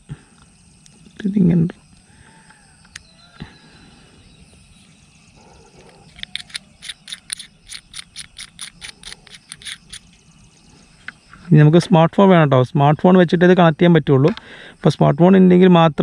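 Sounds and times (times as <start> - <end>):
small animal chirping: 5.3 - 11.2.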